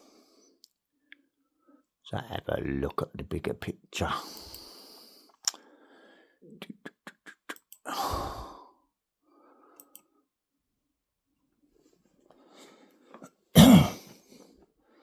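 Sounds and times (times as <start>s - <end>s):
breathy exhale: 7.9s - 8.7s.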